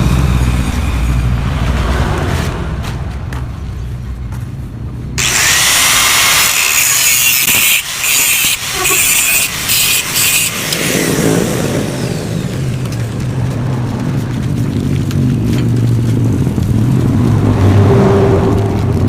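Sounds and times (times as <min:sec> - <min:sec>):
angle grinder grinding metal: 0:05.2 - 0:13.1.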